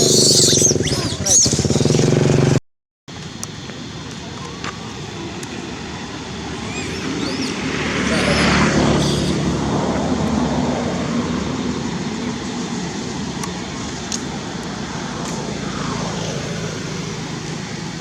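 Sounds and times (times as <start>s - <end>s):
traffic rumble: 0.0s - 18.0s
vehicle engine humming: 0.0s - 18.0s.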